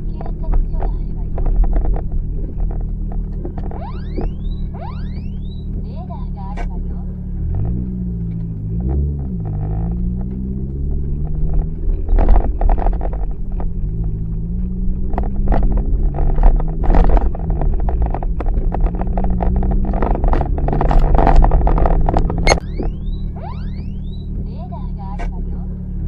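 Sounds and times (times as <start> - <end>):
knocks and thuds: 0.0 - 5.8, 9.4 - 24.4
car engine revving: 0.0 - 26.0
road rumble: 0.0 - 26.0.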